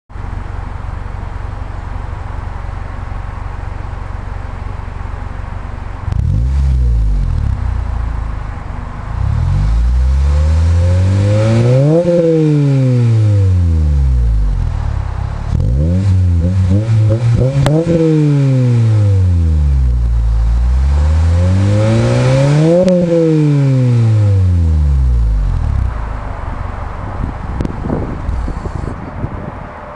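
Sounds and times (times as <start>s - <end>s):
car engine idling and revving: 0.1s - 29.9s.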